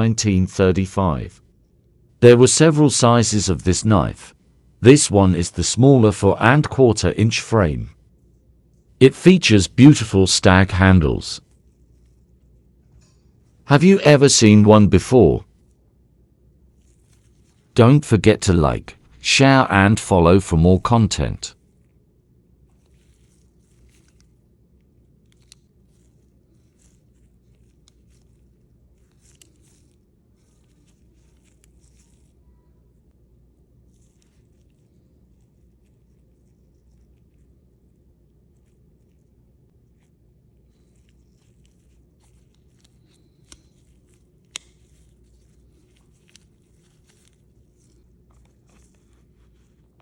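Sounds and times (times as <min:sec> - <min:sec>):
rustling handling noise: 0:22.6 - 0:33.0, 0:33.8 - 0:50.0.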